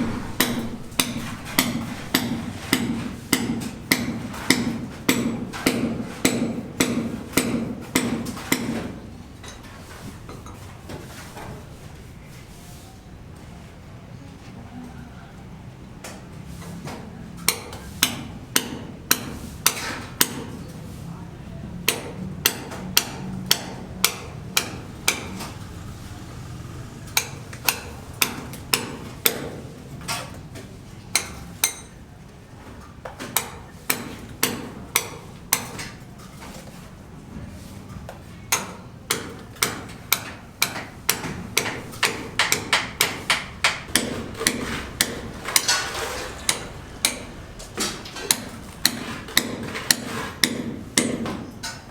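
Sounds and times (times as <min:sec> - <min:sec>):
hammer blows: 0:00.0 - 0:08.9, 0:22.6 - 0:29.6, 0:39.6 - 0:51.3.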